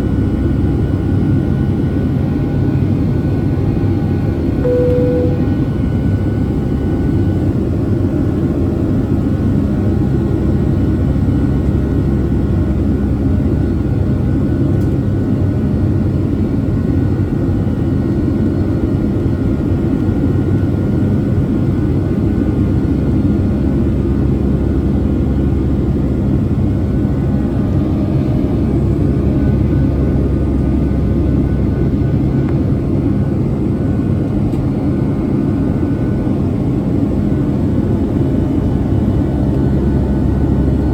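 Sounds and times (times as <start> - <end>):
airplane cabin engine drone: 0.0 - 40.9
faint steady hums: 4.5 - 7.2.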